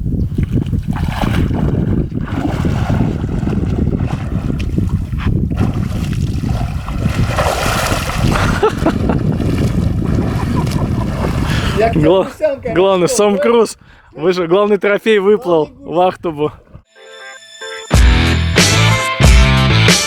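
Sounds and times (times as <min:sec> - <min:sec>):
wind buffeting microphone: 0:00.0 - 0:14.6
person splashing water: 0:00.4 - 0:12.0.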